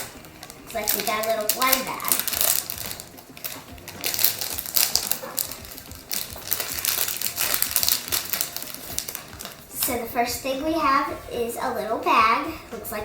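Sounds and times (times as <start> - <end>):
plastic bag crinkling: 0.0 - 10.0.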